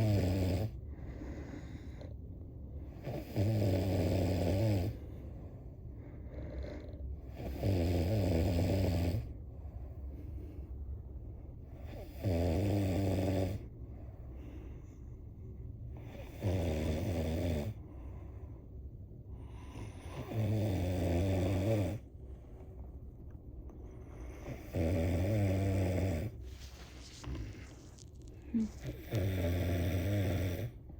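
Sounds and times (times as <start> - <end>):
quiet breathing: 0.0 - 3.2, 4.5 - 7.7, 8.8 - 30.9
person snoring: 3.0 - 5.0, 6.4 - 9.3, 16.0 - 17.8, 19.6 - 22.0, 24.4 - 30.8.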